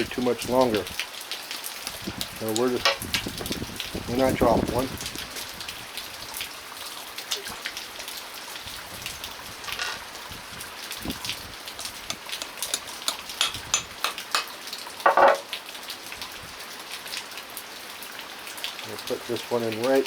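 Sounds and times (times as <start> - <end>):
steady rain falling: 0.0 - 20.0.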